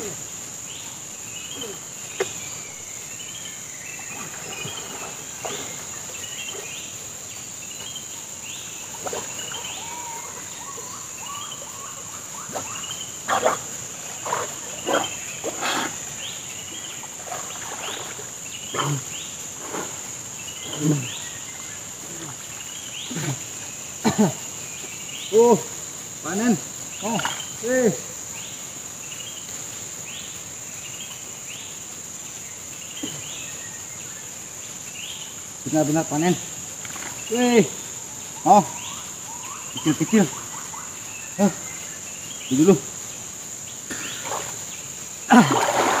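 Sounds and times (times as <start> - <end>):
insect chorus drone: 0.0 - 46.0
water splashing and sloshing: 4.0 - 7.2, 8.8 - 10.9, 12.3 - 20.5, 36.8 - 37.2, 43.9 - 46.0.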